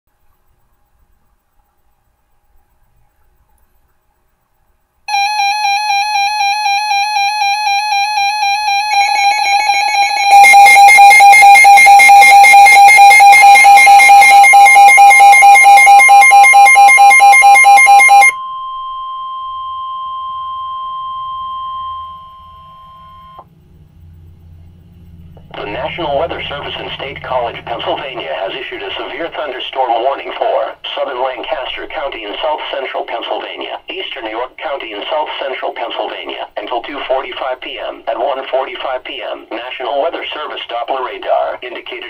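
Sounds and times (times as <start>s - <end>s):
high steady alarm tone: 5.1s - 23.5s, 25.1s - 30.5s
warbling electronic tones: 25.4s - 29.6s.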